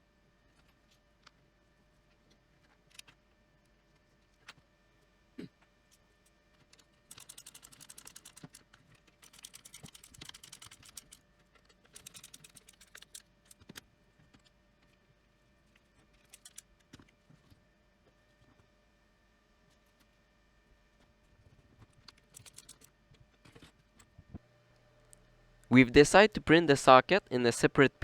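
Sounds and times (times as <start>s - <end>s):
ratcheting screwdriver clicking: 7.1s - 8.6s, 9.2s - 11.2s, 12.0s - 13.6s, 16.3s - 16.6s, 22.3s - 22.9s.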